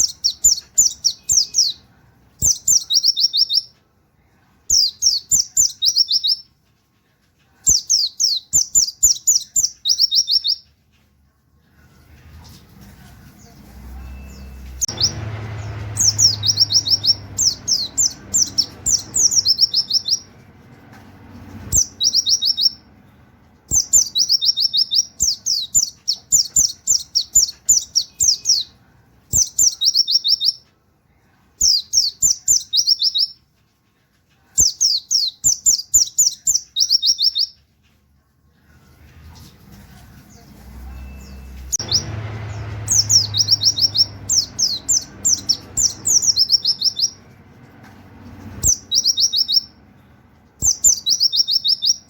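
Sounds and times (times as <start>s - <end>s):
bird whistling song: 0.0s - 1.8s, 2.4s - 3.8s, 4.7s - 6.5s, 7.7s - 10.7s, 14.0s - 20.4s, 21.6s - 22.9s, 23.7s - 30.6s, 31.6s - 33.4s, 34.6s - 37.6s, 41.0s - 47.2s, 48.6s - 49.8s, 50.6s - 52.0s.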